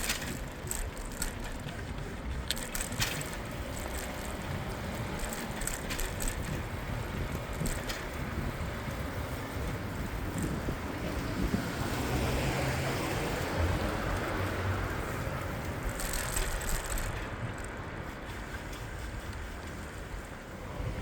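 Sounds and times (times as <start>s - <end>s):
bicycle clicks and rattles: 0.0s - 21.0s
wind and road noise: 0.0s - 21.0s.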